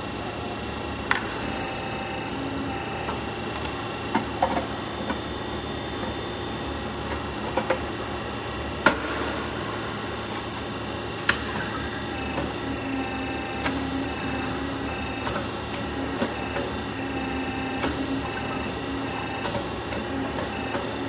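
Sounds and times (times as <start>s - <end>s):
machine humming: 0.0s - 4.1s, 9.1s - 21.0s.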